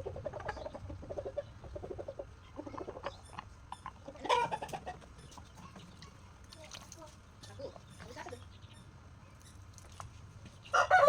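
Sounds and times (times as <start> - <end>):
chicken clucking: 0.0 - 6.2.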